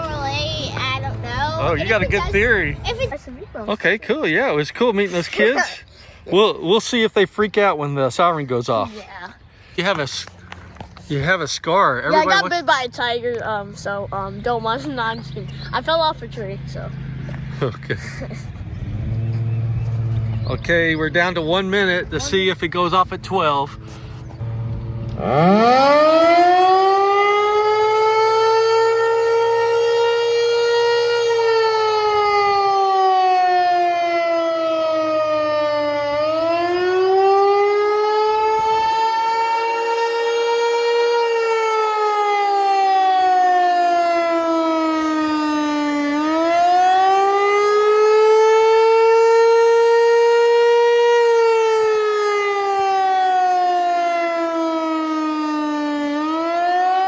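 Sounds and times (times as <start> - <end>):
tornado siren wailing: 18.6 - 57.0.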